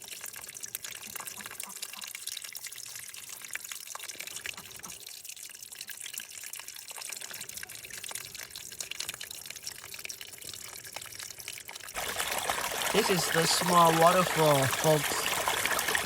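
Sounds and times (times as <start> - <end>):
waterfall splashing and trickling: 0.0 - 16.0.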